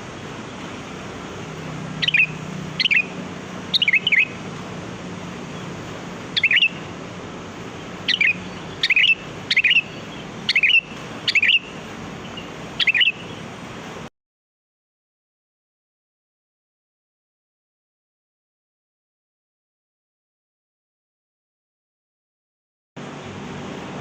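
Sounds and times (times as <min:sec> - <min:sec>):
bird chirping calls: 0:00.0 - 0:14.0
steady hiss: 0:00.0 - 0:14.1.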